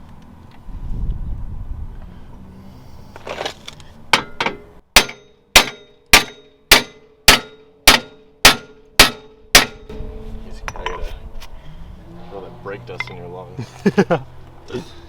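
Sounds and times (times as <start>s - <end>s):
hammer striking steel: 4.2s - 11.1s
low rumble: 9.8s - 12.8s.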